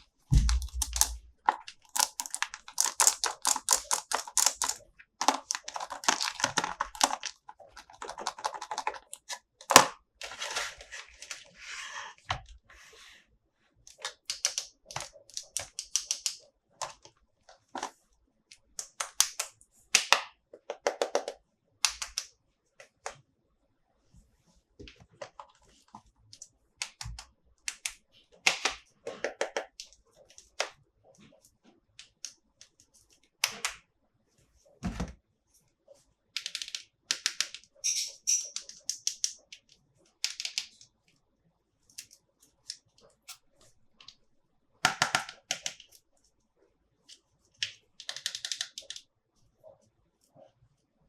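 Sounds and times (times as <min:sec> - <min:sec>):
packaging crinkling: 0:00.3 - 0:10.8
plastic toys clicking and tapping: 0:00.4 - 0:09.9, 0:13.9 - 0:18.0, 0:18.6 - 0:23.2, 0:26.8 - 0:30.8, 0:36.3 - 0:40.9, 0:44.8 - 0:46.0, 0:47.6 - 0:49.1.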